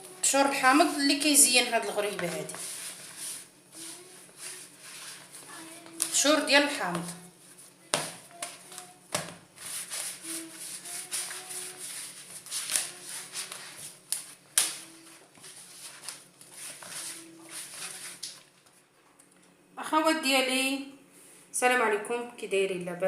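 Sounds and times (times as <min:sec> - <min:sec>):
scraping and rustling: 0:01.8 - 0:09.0, 0:09.6 - 0:18.8.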